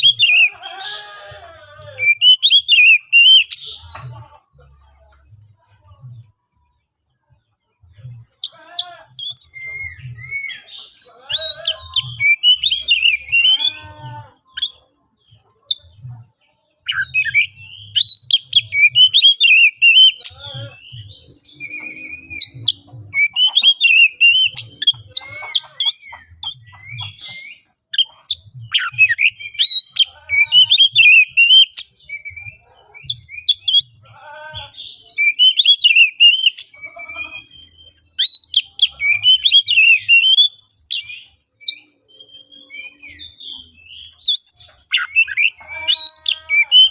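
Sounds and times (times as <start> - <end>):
bird singing varied whistles: 2.1 - 3.6.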